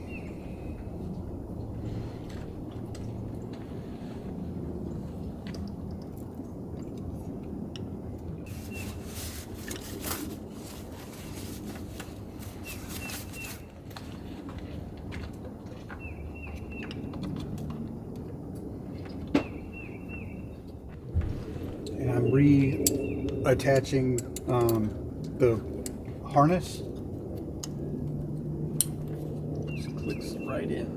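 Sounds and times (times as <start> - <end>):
small bird chirping: 22.0 - 23.4.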